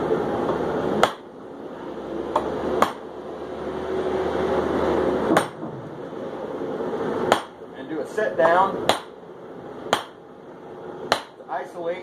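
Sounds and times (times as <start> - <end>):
hammer striking steel on anvil: 5.3 - 5.6, 7.3 - 7.6.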